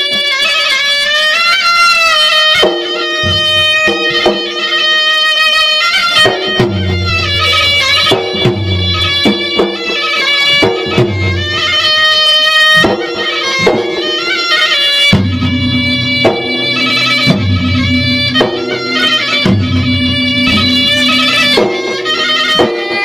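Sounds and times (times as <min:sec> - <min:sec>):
wind instrument melody: 0:00.0 - 0:23.0
irregular drum strokes: 0:06.0 - 0:23.0.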